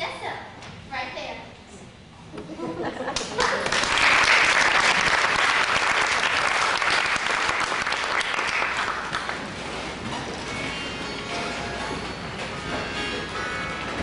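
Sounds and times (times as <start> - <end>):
large audience applauding: 3.2 - 9.5.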